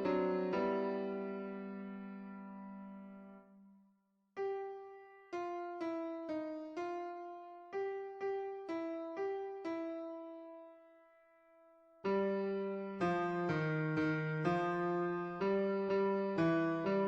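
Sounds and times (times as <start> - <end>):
piano-type keyboard notes: 0.0 - 3.5, 4.4 - 17.0.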